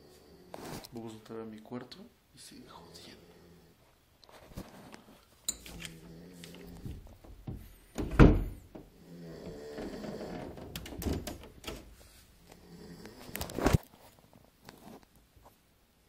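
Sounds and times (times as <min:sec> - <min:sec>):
loud thump: 0:07.4 - 0:08.8
dog snoring: 0:08.9 - 0:10.3.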